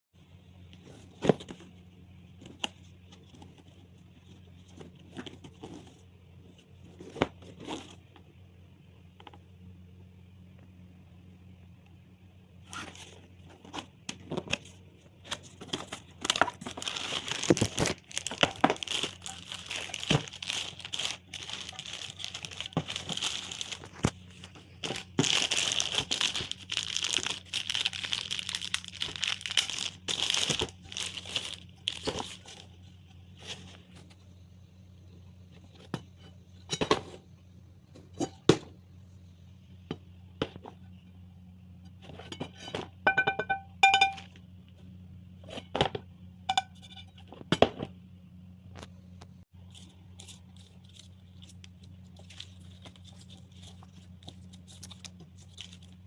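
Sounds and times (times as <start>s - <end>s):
packaging crinkling and tearing: 15.3s - 32.8s, 49.7s - 56.0s.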